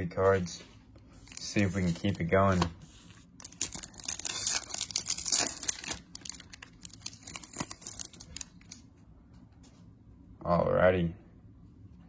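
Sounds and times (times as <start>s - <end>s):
card pack wrapper tearing: 3.4s - 8.8s.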